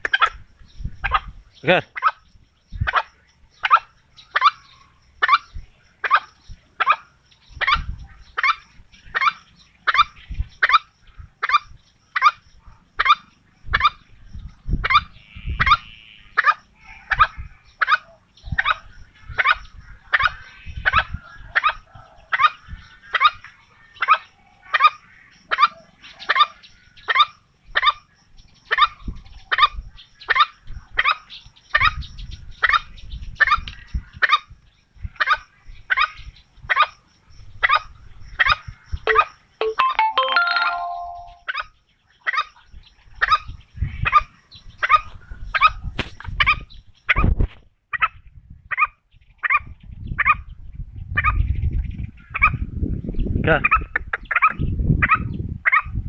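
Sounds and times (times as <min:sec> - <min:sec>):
junglefowl calling: 0:37.7 - 0:40.0.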